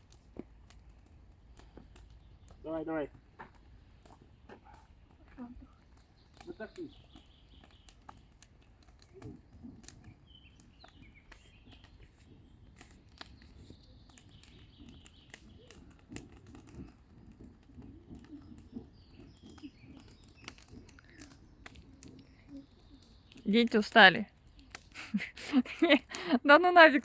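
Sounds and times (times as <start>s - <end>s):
campfire crackling: 0.0s - 27.0s
birds chirping: 0.4s - 27.0s.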